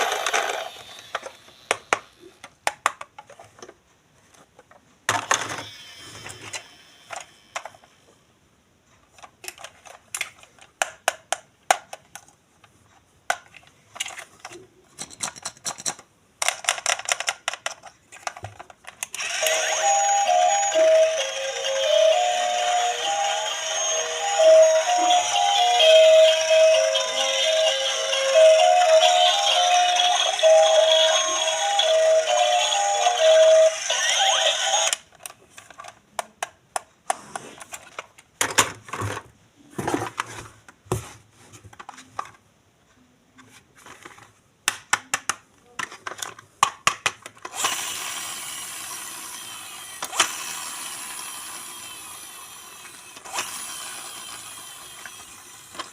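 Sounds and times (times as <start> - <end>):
plastic toy parts clicking and rattling: 0.0 - 3.8, 6.5 - 7.8, 9.1 - 19.9, 27.1 - 36.9, 37.6 - 39.2, 43.8 - 55.9.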